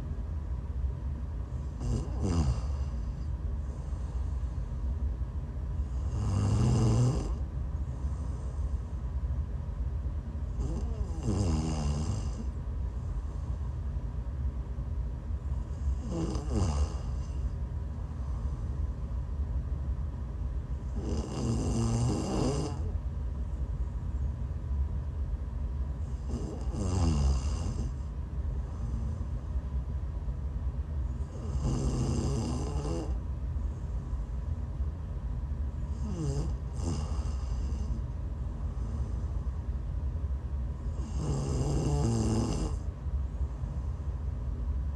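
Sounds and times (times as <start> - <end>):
woman snoring: 1.7 - 4.4, 5.8 - 7.4, 10.5 - 12.6, 15.8 - 17.5, 20.9 - 22.9, 26.1 - 28.0, 31.2 - 33.2, 35.9 - 38.0, 40.9 - 42.8.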